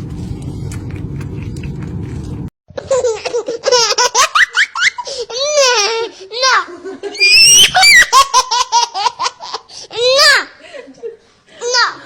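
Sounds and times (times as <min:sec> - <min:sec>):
low rumbling noise: 0:00.0 - 0:02.5
child laughing: 0:02.8 - 0:10.6.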